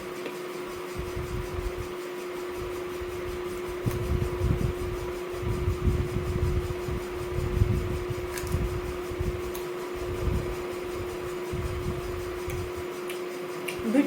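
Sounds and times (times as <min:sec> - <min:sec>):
electric fan humming: 0:00.0 - 0:14.0
low rumbling: 0:02.6 - 0:12.8.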